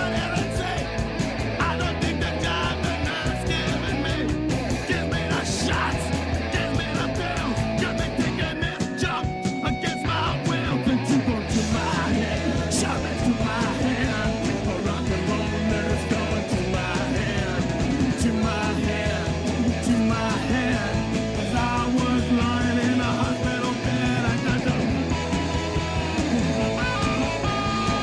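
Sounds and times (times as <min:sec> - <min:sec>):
person singing: 0:00.0 - 0:01.0, 0:01.6 - 0:28.0
punk rock song: 0:00.0 - 0:28.0.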